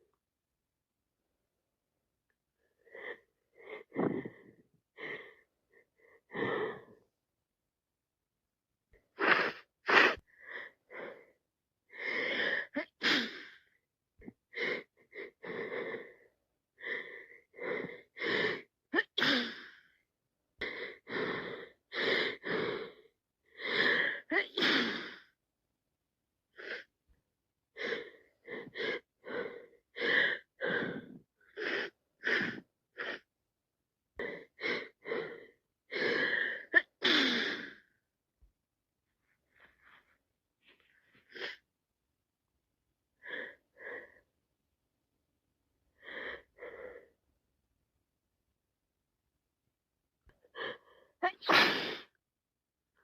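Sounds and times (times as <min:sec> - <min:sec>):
person gasping and sneezing: 0:03.8 - 0:04.6, 0:09.1 - 0:10.4, 0:17.7 - 0:19.8, 0:23.7 - 0:25.4, 0:50.7 - 0:52.2.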